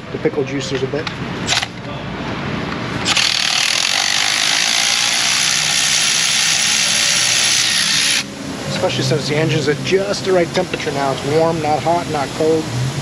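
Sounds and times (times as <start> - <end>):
power ratchet whirring: 1.4 - 1.8, 3.0 - 8.3.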